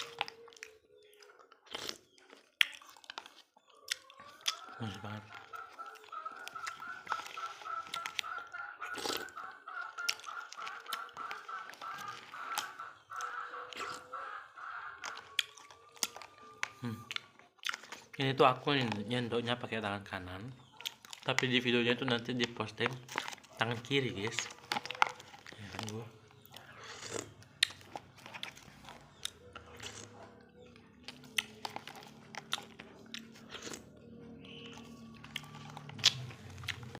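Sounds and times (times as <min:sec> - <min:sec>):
person chewing: 0:00.0 - 0:19.2, 0:20.7 - 0:37.0.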